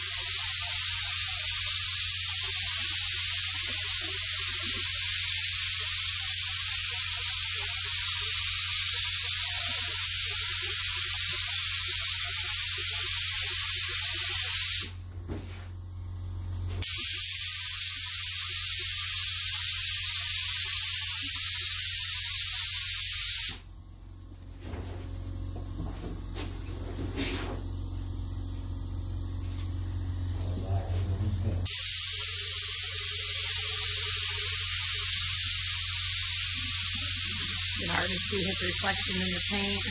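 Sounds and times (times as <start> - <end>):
spray paint hissing: 0.0 - 15.0, 16.8 - 23.7, 31.6 - 39.9.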